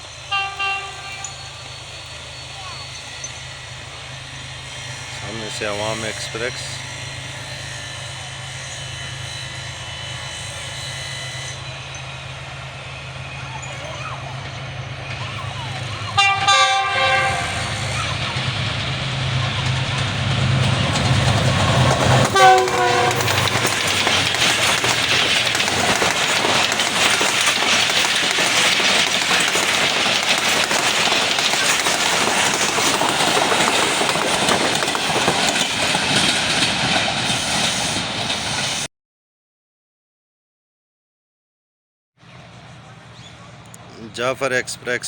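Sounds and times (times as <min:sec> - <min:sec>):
diesel locomotive engine hum: 0:00.0 - 0:38.9, 0:42.2 - 0:45.0
wheels rattling on rails: 0:00.0 - 0:38.9
train horn: 0:00.2 - 0:01.6, 0:16.0 - 0:18.2, 0:22.2 - 0:23.6.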